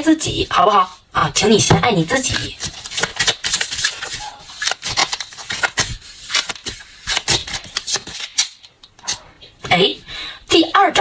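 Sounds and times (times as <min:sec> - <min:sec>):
cards rustling: 0:02.1 - 0:09.2.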